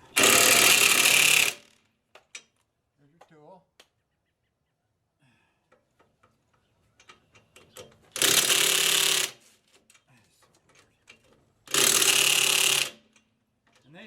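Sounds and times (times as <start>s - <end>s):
power driver driving screws: 0.1s - 1.8s, 8.0s - 9.4s, 11.7s - 13.2s.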